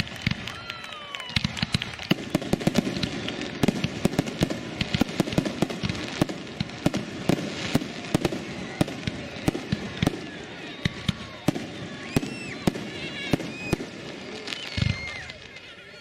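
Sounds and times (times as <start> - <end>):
firework bangs: 0.0 - 15.7
firework crackle: 0.0 - 16.0.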